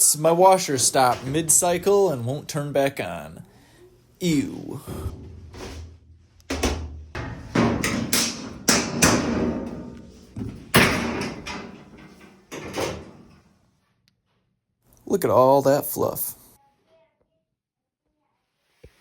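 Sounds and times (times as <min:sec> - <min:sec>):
knocks and clatters of panel: 0:06.5 - 0:13.3.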